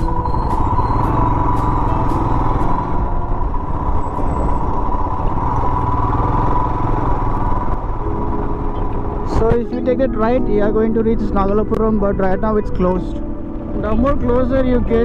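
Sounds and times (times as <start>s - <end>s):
motorcycle engine running: 0.0s - 9.7s.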